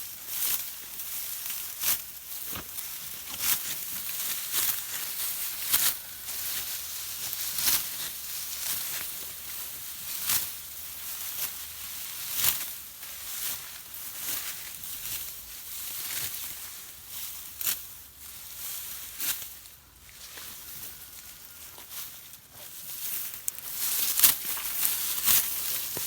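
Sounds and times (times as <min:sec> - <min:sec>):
dry rice stalks rustling: 0:00.0 - 0:26.0.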